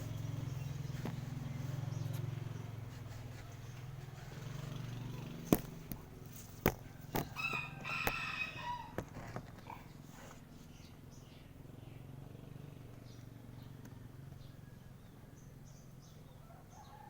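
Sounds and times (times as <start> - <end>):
low steady hum: 0.0 - 12.1
rooster crowing: 6.8 - 9.2, 16.4 - 17.0.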